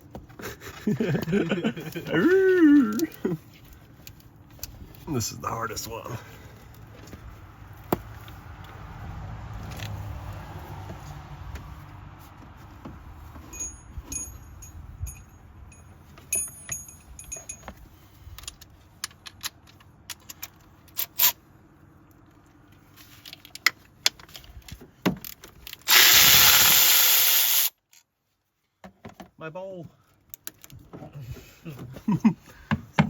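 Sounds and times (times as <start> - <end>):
clicks and metallic jingles: 13.4 - 21.4
loud steady hiss: 25.9 - 27.7.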